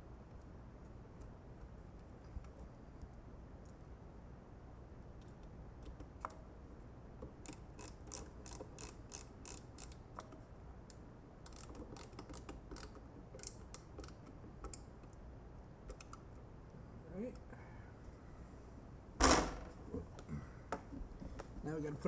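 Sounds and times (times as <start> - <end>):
ratchet wrench clicking: 7.4 - 10.0, 11.4 - 14.8.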